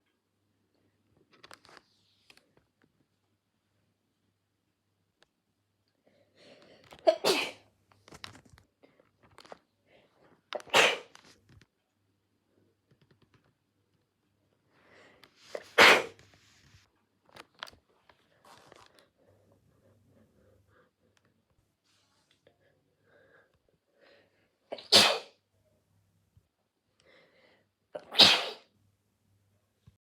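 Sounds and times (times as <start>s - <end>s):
person sneezing: 7.0s - 7.6s, 10.6s - 11.2s, 15.5s - 16.2s, 24.7s - 25.4s, 28.0s - 28.7s.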